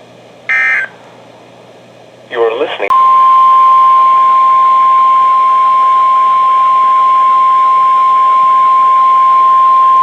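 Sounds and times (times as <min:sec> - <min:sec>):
high-pitched alarm tone: 0:00.5 - 0:01.0, 0:02.9 - 0:10.0
radio hiss: 0:02.3 - 0:02.9.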